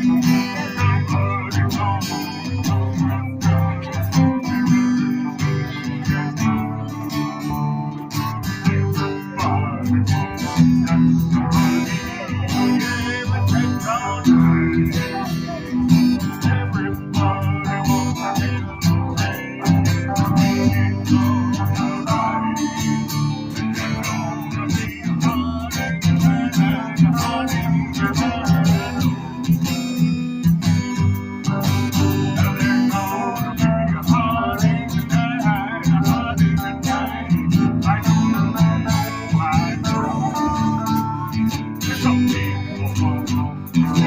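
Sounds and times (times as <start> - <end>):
live band playing: 0.0 - 44.0.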